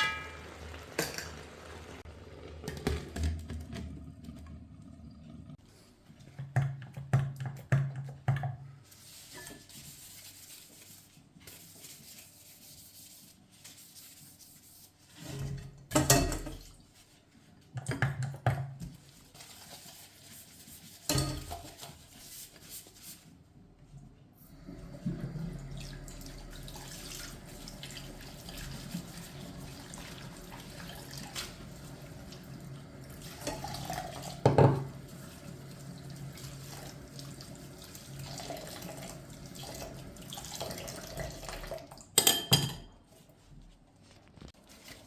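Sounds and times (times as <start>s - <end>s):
pots and pans clattering: 0.0s - 1.7s, 15.4s - 16.7s, 21.1s - 21.9s, 33.3s - 35.0s, 42.2s - 43.0s.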